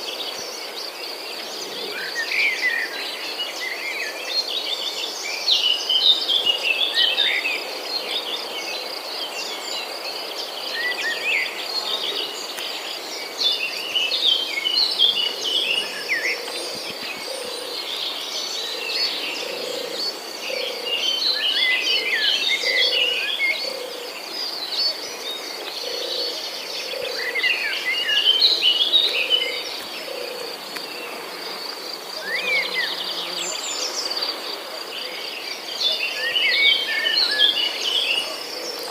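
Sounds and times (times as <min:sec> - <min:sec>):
insects trilling: 0:10.4 - 0:38.9.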